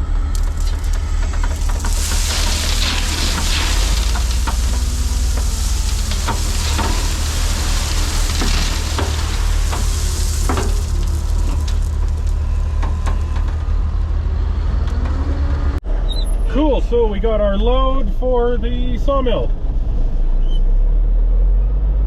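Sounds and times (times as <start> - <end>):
engine running: 0.0 - 15.8
gravel pouring into truck bed: 0.3 - 13.6.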